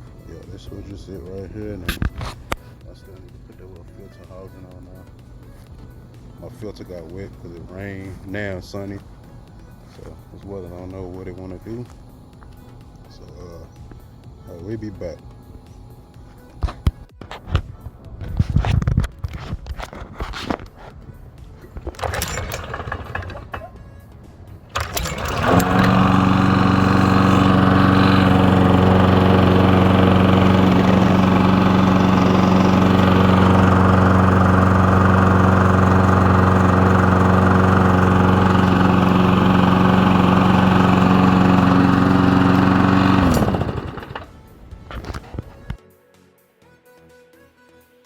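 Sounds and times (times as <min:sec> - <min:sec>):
lawn mower engine running: 0:05.6 - 0:17.0, 0:21.8 - 0:45.5.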